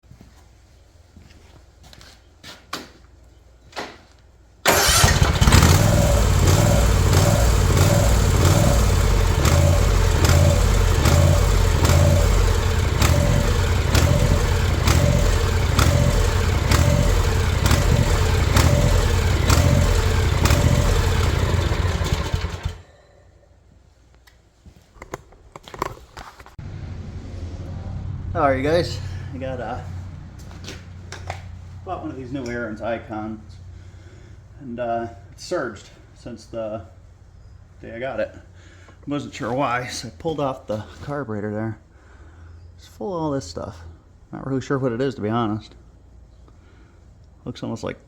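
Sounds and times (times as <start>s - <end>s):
mower engine running: 4.7s - 22.9s.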